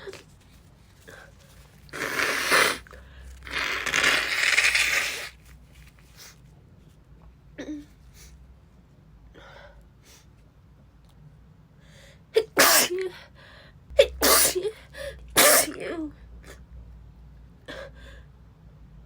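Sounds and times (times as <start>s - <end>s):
woman sneezing loudly: 12.4s - 13.1s, 14.0s - 14.8s, 15.4s - 16.0s.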